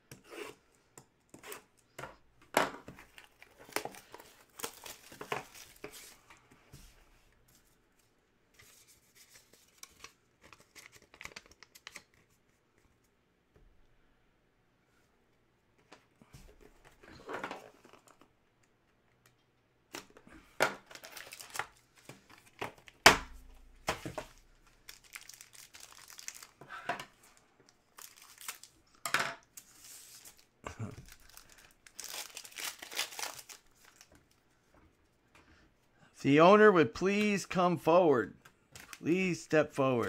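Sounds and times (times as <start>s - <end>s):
card packaging tearing and crinkling: 3.0s - 6.2s, 9.2s - 12.2s, 20.8s - 23.0s, 24.0s - 26.6s, 27.9s - 28.8s, 29.6s - 34.1s.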